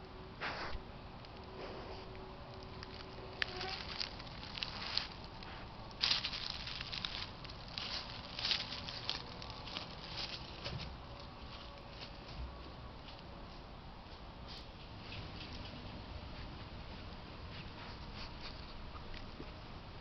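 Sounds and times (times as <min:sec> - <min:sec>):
animal rustling in ground litter: 0:01.5 - 0:13.6.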